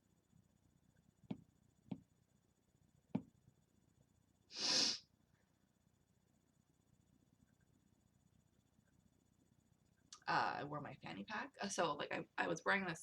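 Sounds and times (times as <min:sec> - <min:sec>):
breathy sniff: 0:04.5 - 0:05.0.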